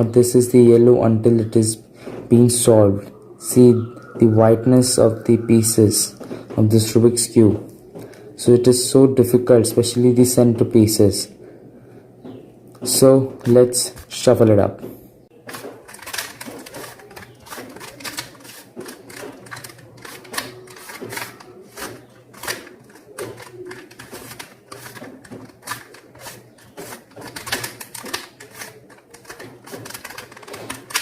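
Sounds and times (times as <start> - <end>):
puzzle cube clicking: 15.5 - 31.0.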